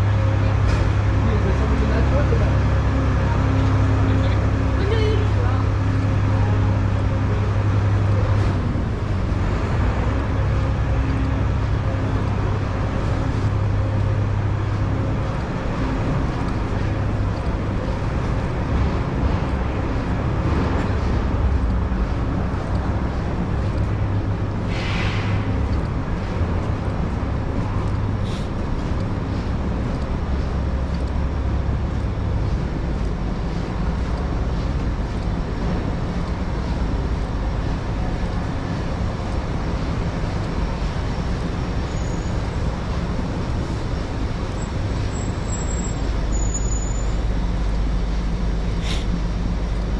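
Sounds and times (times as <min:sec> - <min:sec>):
street noise: 0:00.0 - 0:49.9
vehicle engines rumbling: 0:00.0 - 0:49.9
short hiss: 0:24.7 - 0:25.4, 0:48.8 - 0:49.1.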